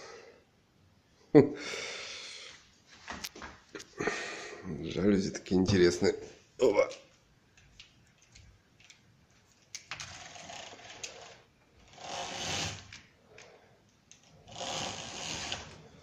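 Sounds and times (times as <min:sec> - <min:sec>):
window blinds whirring and rattling: 0:09.9 - 0:13.6, 0:14.2 - 0:16.0.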